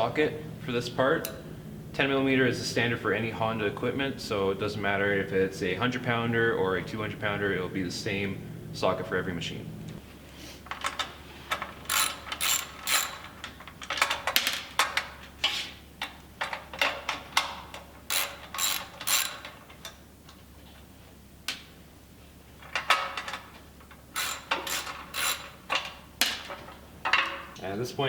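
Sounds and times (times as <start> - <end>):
socket ratchet clicking: 11.9 - 13.4, 18.1 - 19.5, 24.2 - 25.6.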